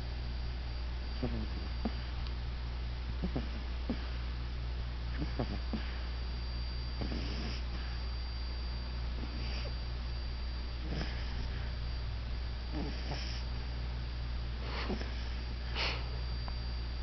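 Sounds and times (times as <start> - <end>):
steady low hum: 0.0 - 17.0
puppy snoring: 1.1 - 2.2, 3.2 - 4.3, 5.1 - 6.1, 6.8 - 8.0, 9.1 - 9.8, 10.8 - 11.8, 12.6 - 13.7, 14.6 - 16.5.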